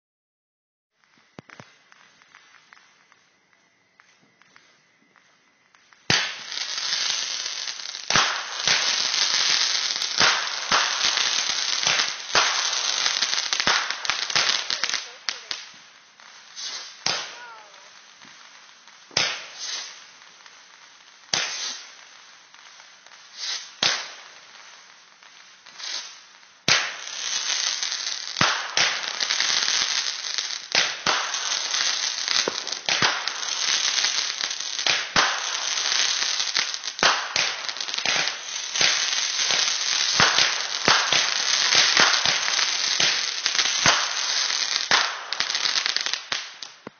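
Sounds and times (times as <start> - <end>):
fireworks bangs and crackling: 0.9 - 46.9.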